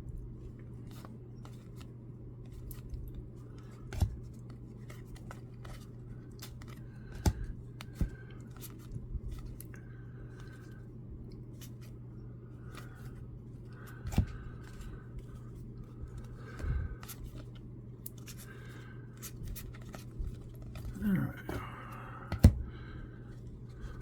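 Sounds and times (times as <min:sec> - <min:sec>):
low steady hum: 0:00.0 - 0:24.0
trading cards scraping and rustling: 0:00.6 - 0:09.7, 0:12.6 - 0:22.6.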